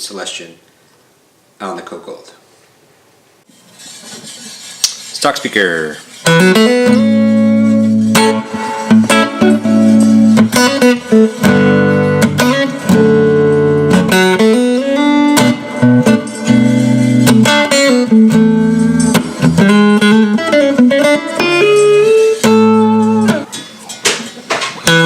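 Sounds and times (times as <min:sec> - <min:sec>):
electric guitar chords and notes: 0:06.2 - 0:25.0.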